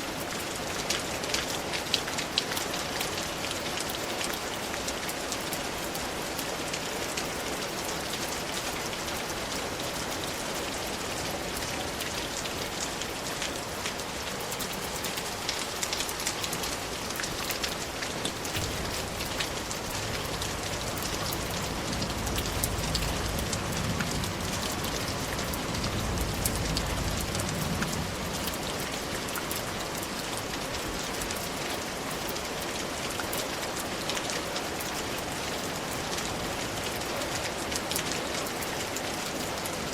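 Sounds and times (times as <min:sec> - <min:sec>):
rain drops pattering: 0:00.0 - 0:39.9
low rumble: 0:18.6 - 0:28.4.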